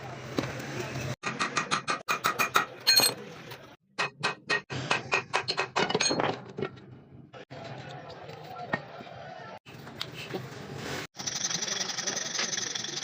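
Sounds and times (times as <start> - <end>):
metal parts and tools clinking: 2.4 - 3.6, 5.5 - 6.8.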